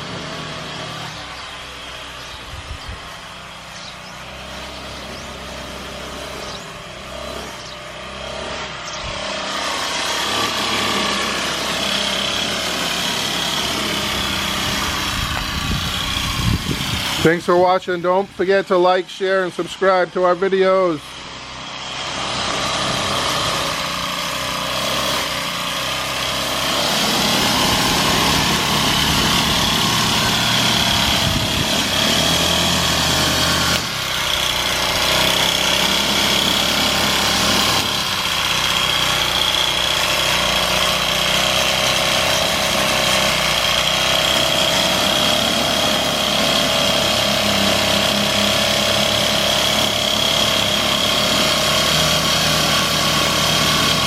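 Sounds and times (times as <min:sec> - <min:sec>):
small engine power tool running: 0:00.0 - 0:54.0.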